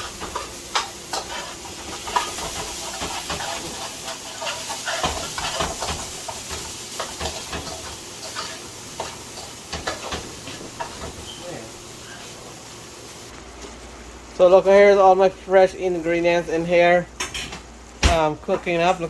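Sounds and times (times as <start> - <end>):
spices sizzling in hot oil: 0.0 - 13.4.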